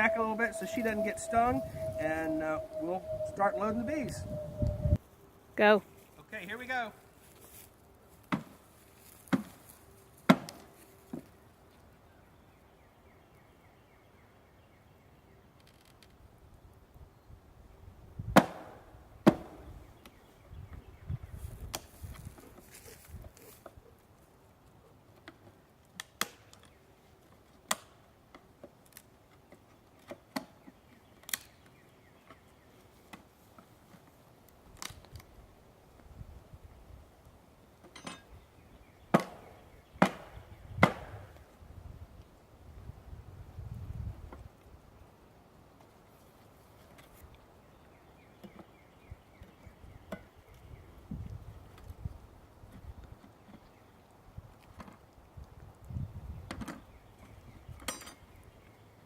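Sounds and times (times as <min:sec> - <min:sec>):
faint steady hum: 0:00.0 - 0:05.0.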